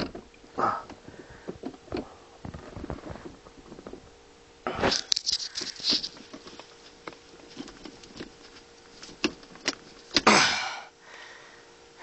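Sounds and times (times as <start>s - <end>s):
shift knob rubbing and scraping: 5.0s - 10.2s.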